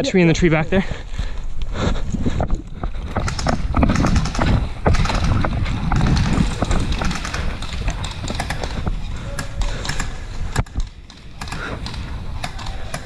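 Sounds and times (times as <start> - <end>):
wind buffeting microphone: 0.0 - 13.0
footfalls: 1.8 - 13.0
sharp clicks and knocks: 3.0 - 13.0.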